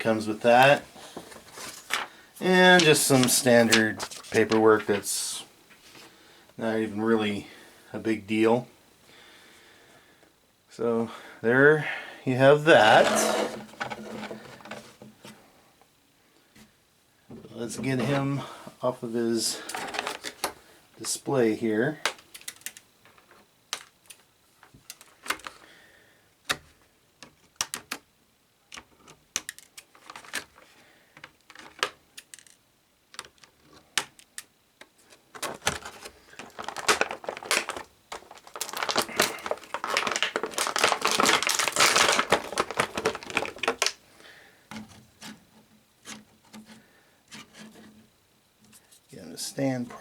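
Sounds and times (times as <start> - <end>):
plastic packaging crinkling: 0.0 - 5.3, 12.7 - 14.9, 19.6 - 20.5, 35.4 - 44.0.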